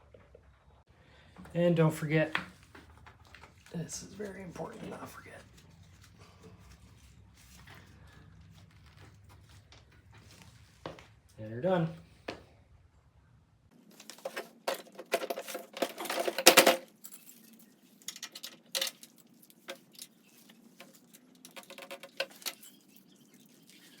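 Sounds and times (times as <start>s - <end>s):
small hard objects clinking: 14.0s - 24.0s.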